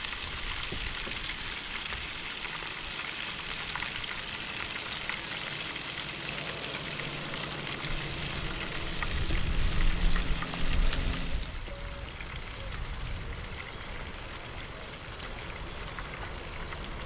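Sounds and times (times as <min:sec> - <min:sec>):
chicken sizzling in hot oil: 0:00.0 - 0:17.0
low rumble: 0:06.4 - 0:11.7.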